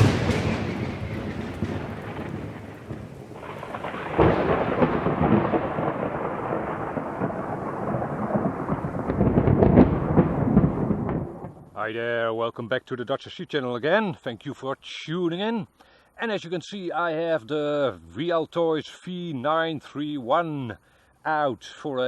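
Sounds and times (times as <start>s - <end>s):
thunder crack and rumble: 0.0s - 11.8s.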